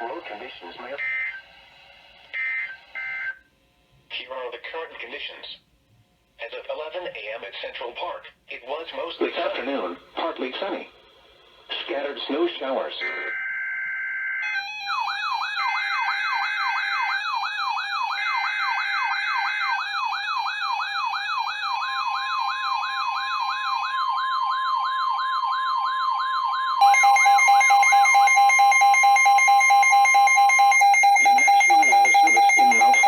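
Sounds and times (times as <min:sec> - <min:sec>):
pulsing alarm tone: 0:13.0 - 0:33.0
steady warning tone: 0:26.8 - 0:33.0.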